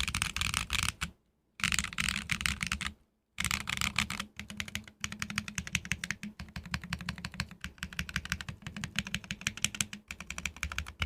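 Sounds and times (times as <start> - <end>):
fast mechanical keyboard typing: 0.0 - 11.0.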